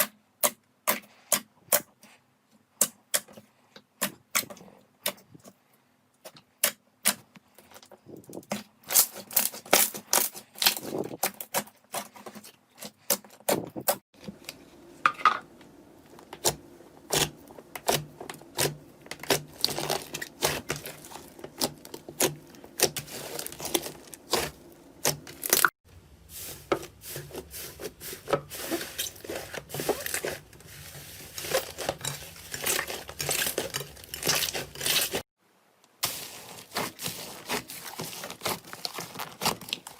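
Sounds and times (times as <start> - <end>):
slime squelching by hand: 16.2 - 35.2, 36.0 - 39.9.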